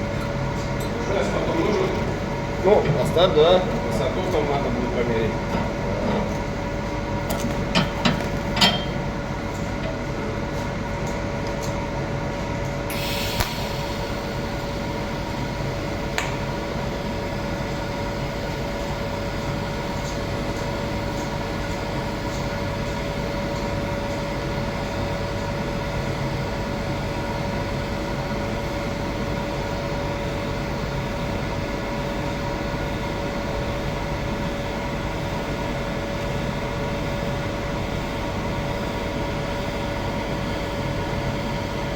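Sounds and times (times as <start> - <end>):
welding equipment humming: 0.0 - 11.0, 12.9 - 19.4
welding arc sizzling: 12.9 - 14.9.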